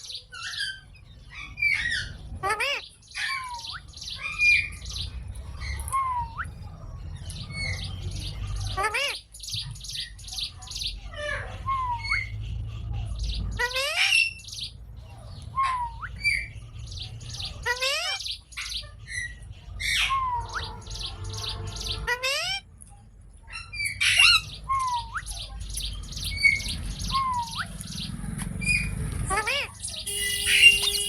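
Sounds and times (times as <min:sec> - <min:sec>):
parrot harsh chattering: 0:01.8 - 0:04.6, 0:13.6 - 0:14.4, 0:17.6 - 0:20.8, 0:21.9 - 0:22.6, 0:29.3 - 0:31.0.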